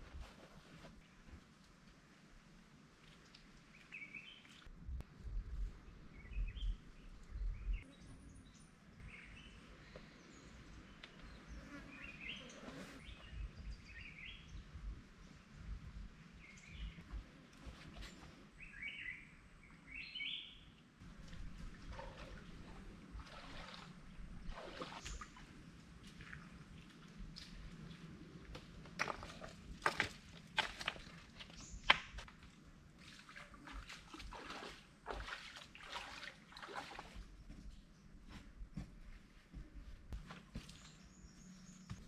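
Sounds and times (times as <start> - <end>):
small birds chirping: 40.4 - 42.0.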